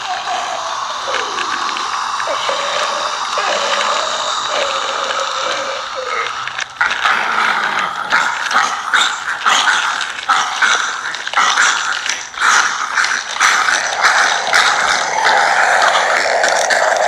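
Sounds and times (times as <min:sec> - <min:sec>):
steady noisy bed: 0:00.0 - 0:17.0
zombie growls: 0:00.0 - 0:17.0.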